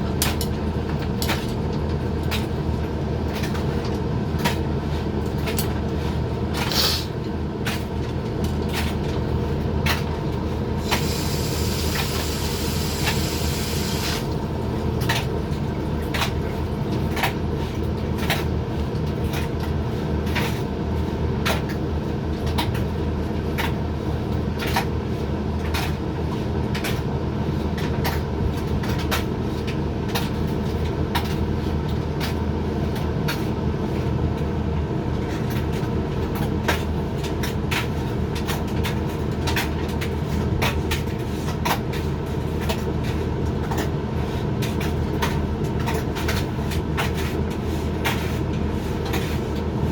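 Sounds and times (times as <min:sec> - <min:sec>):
dryer motor and fan hum: 0:00.0 - 0:49.9
hiss: 0:06.7 - 0:07.1, 0:10.8 - 0:14.2.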